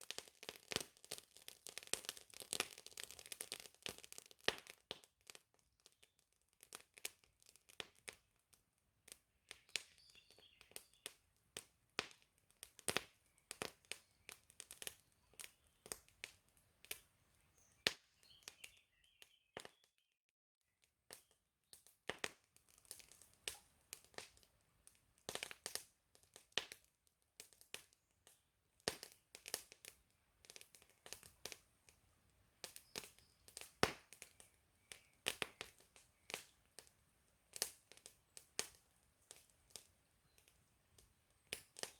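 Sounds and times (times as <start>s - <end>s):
campfire crackling and popping: 0.0s - 18.8s, 21.1s - 41.9s
faint bird chirps: 9.6s - 11.2s, 13.2s - 16.0s, 17.3s - 20.0s, 32.8s - 33.6s.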